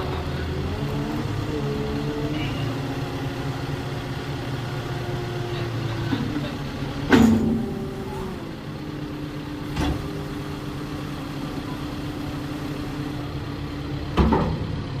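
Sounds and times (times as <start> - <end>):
diesel engine idling: 0.0 - 15.0.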